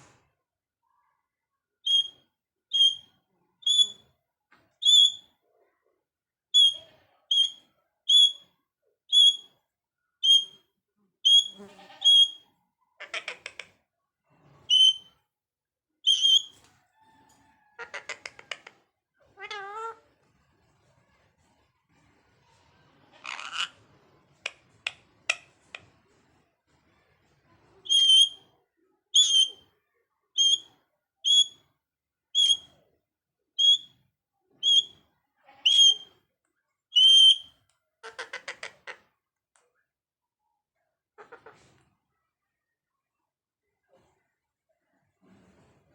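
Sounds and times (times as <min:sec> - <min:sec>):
parrot harsh buzzy calls: 0:01.9 - 0:02.1, 0:02.8 - 0:03.0, 0:03.7 - 0:04.0, 0:04.8 - 0:05.2, 0:06.6 - 0:08.4, 0:09.1 - 0:09.4, 0:10.2 - 0:10.6, 0:11.3 - 0:12.4, 0:14.7 - 0:15.1, 0:16.1 - 0:16.5, 0:27.9 - 0:28.4, 0:29.2 - 0:29.6, 0:30.4 - 0:30.6, 0:31.3 - 0:31.5, 0:32.4 - 0:32.6, 0:33.6 - 0:33.9, 0:34.6 - 0:34.9, 0:35.6 - 0:36.1, 0:37.0 - 0:37.5
parrot wavering call: 0:01.9 - 0:02.1, 0:02.7 - 0:03.0, 0:03.7 - 0:04.0, 0:04.8 - 0:05.2, 0:06.6 - 0:08.4, 0:09.1 - 0:09.5, 0:10.2 - 0:10.6, 0:11.3 - 0:12.4, 0:14.7 - 0:15.1, 0:16.1 - 0:16.5, 0:27.9 - 0:28.4, 0:29.2 - 0:29.6, 0:30.4 - 0:30.7, 0:31.3 - 0:31.6, 0:32.4 - 0:32.7, 0:33.6 - 0:33.9, 0:34.6 - 0:35.0, 0:35.6 - 0:36.1, 0:37.0 - 0:37.5
parrot whistling: 0:01.9 - 0:02.1, 0:02.7 - 0:03.1, 0:03.7 - 0:04.0, 0:04.8 - 0:05.2, 0:06.6 - 0:08.4, 0:09.1 - 0:09.5, 0:10.2 - 0:10.6, 0:11.3 - 0:12.4, 0:14.7 - 0:15.1, 0:16.1 - 0:16.5, 0:27.9 - 0:28.4, 0:29.2 - 0:29.6, 0:30.4 - 0:30.7, 0:31.3 - 0:31.6, 0:32.4 - 0:32.7, 0:33.6 - 0:33.9, 0:34.6 - 0:35.0, 0:35.6 - 0:36.1, 0:37.0 - 0:37.5.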